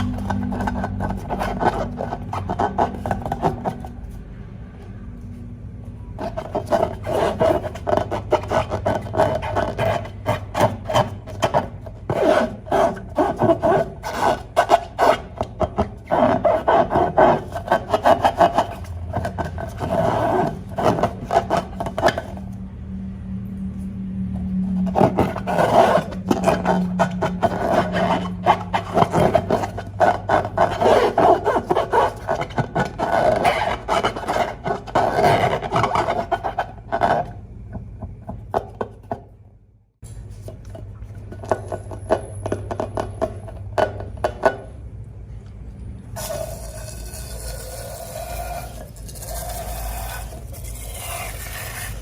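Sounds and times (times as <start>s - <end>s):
rubber balloons squeaking: 24.7s - 36.6s.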